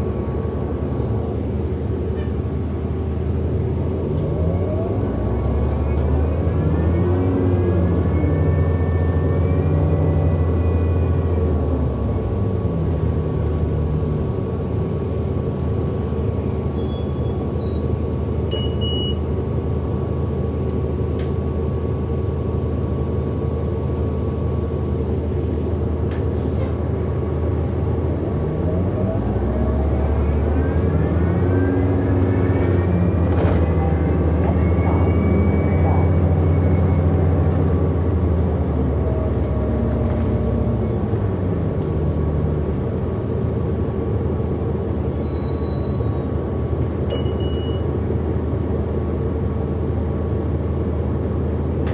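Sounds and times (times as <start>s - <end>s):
bus motor whining: 24.6s - 49.8s.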